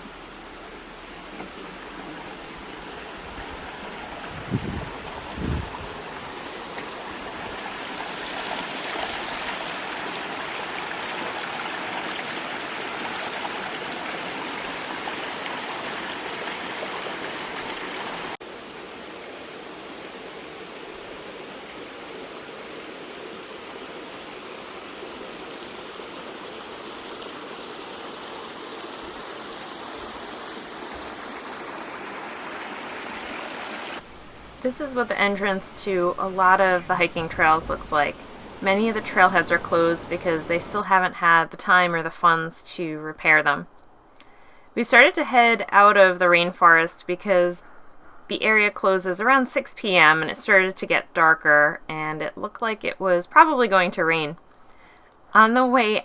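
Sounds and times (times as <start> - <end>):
stream water rushing: 0.0 - 41.4.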